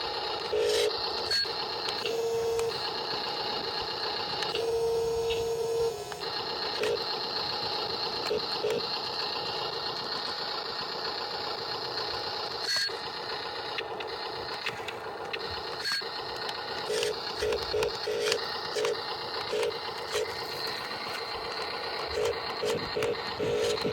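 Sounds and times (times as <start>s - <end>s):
small electric motors whirring: 0.0s - 23.9s
clicks: 13.7s - 23.9s.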